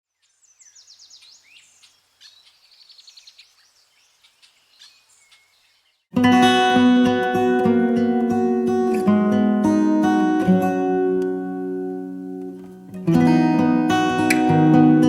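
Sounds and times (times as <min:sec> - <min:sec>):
songbirds singing: 0:00.1 - 0:06.1
acoustic guitar music: 0:06.1 - 0:15.0.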